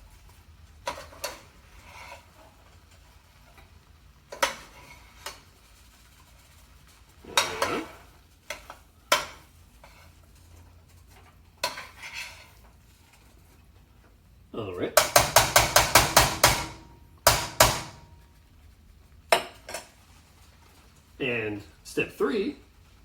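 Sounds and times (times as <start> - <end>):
spatula scraping a frying pan: 0.1 - 13.9, 17.3 - 21.2.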